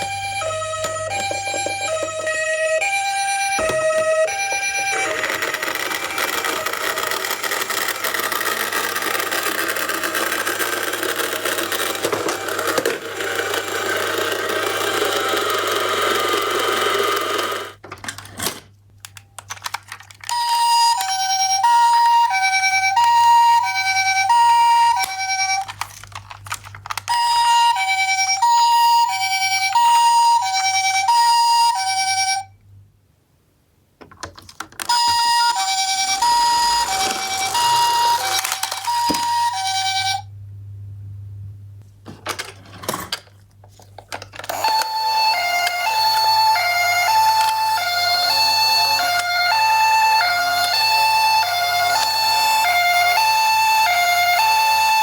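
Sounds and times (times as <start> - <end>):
harsh noisy siren: 0.0 - 7.2, 35.1 - 40.2, 44.6 - 55.0
two-tone electronic siren: 0.0 - 17.8, 20.4 - 25.8, 27.1 - 32.4, 34.9 - 40.3, 44.5 - 55.0.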